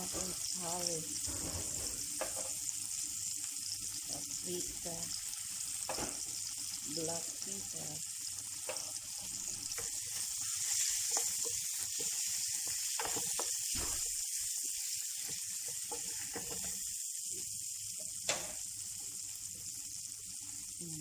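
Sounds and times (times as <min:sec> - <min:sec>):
vegetables sizzling in a pan: 0:00.0 - 0:21.0.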